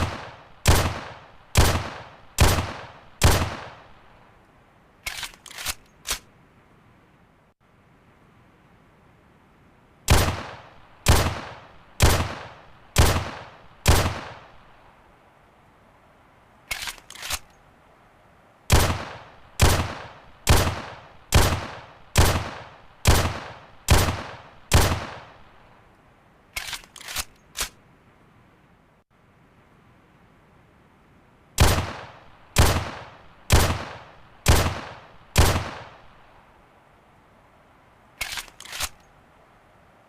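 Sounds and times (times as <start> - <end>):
pistol shots with echo: 0.0 - 3.9, 10.1 - 14.6, 18.7 - 25.4, 31.6 - 36.1
sharp metal clicks: 5.0 - 6.3, 16.7 - 17.6, 26.5 - 27.8, 38.2 - 39.0.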